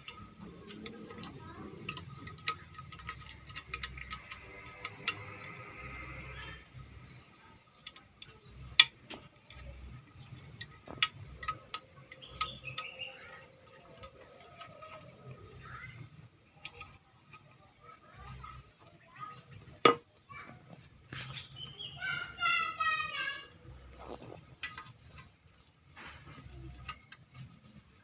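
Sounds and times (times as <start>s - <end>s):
small hard objects clicking: 0.0s - 20.4s.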